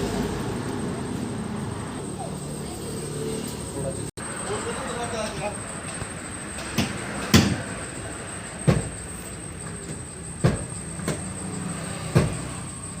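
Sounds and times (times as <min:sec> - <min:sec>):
sharp knocks on car: 0:06.7 - 0:07.6, 0:08.6 - 0:09.0, 0:09.8 - 0:11.3, 0:12.1 - 0:12.6.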